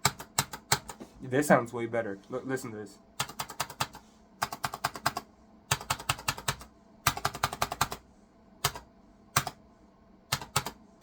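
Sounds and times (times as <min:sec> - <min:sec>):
computer keyboard key presses: 0:03.2 - 0:08.0, 0:10.3 - 0:10.8.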